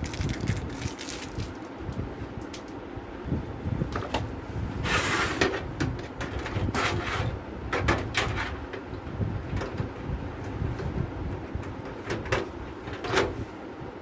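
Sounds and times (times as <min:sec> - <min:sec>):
low background rumble: 0:00.0 - 0:04.8
clicks and scraping in metal cabinet: 0:04.0 - 0:08.9, 0:11.6 - 0:13.6.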